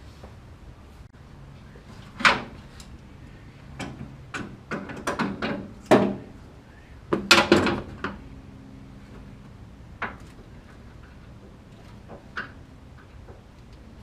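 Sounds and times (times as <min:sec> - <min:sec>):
hand tools knocking and clattering: 0:03.8 - 0:06.3, 0:07.1 - 0:08.2.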